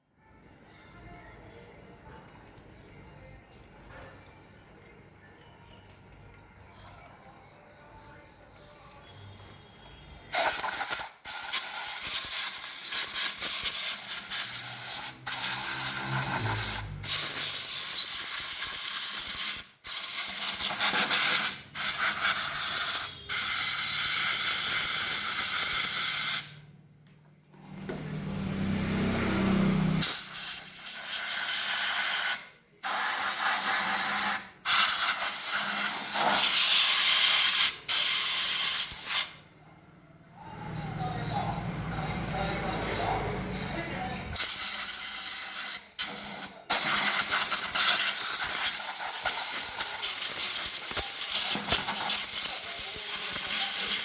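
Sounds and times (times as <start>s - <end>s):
pressure washer spray hissing: 10.3s - 26.5s, 30.0s - 39.4s, 44.4s - 54.0s.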